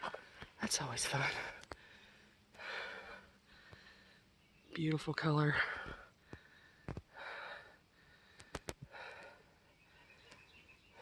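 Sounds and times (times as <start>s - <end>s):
hiker breathing: 0.0s - 4.7s, 5.5s - 11.0s
sharp clicks: 8.4s - 8.8s.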